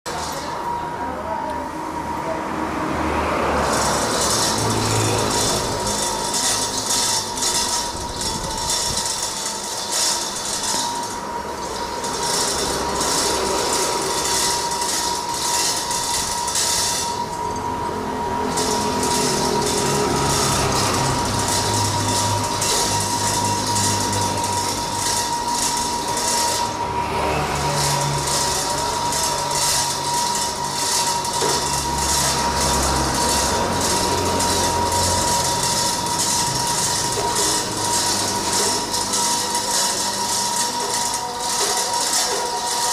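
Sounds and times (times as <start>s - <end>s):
high machine whine: 0.1s - 42.9s
machine hum: 0.1s - 42.9s
stone crusher drone: 0.1s - 42.9s
hissing clatter: 18.4s - 42.9s.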